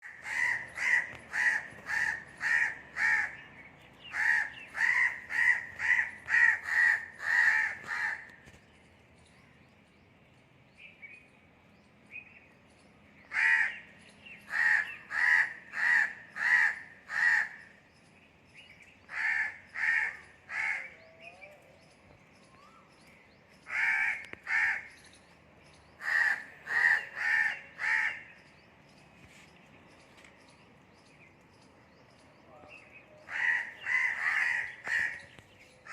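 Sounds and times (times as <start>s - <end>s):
crows cawing: 0.0s - 3.4s, 4.0s - 8.5s, 13.3s - 13.9s, 14.5s - 17.8s, 19.0s - 21.0s, 23.6s - 25.0s, 26.0s - 28.4s, 33.2s - 35.9s.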